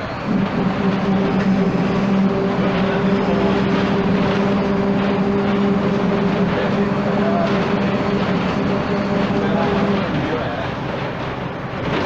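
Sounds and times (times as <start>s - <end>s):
bus diesel engine droning: 0.0s - 12.0s.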